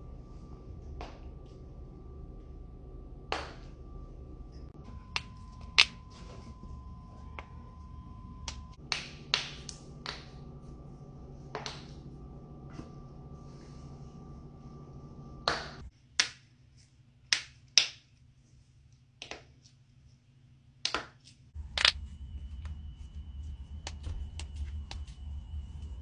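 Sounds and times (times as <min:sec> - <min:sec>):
faint steady hum: 0:00.0 - 0:16.0, 0:21.6 - 0:26.0.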